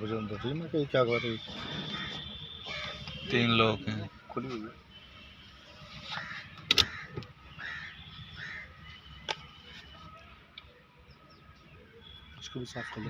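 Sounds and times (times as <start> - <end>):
crow cawing: 0.2 - 3.2, 6.1 - 8.8.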